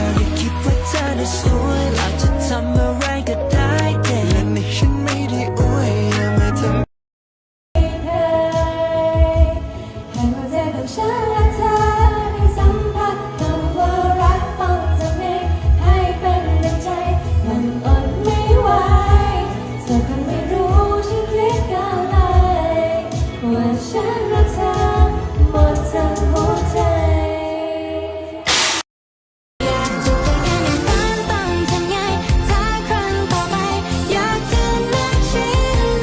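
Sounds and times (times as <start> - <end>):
woman singing: 0.0 - 6.1, 7.8 - 28.4, 30.9 - 36.0
bass-heavy beat: 0.0 - 6.8.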